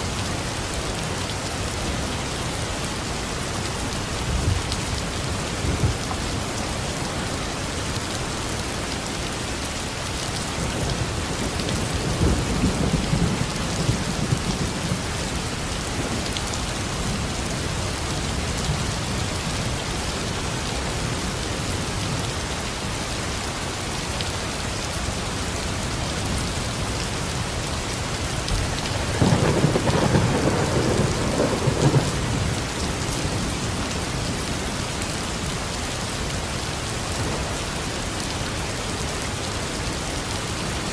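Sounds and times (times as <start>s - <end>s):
steady rain: 0.0s - 40.9s
thunder rumbling: 28.5s - 33.5s.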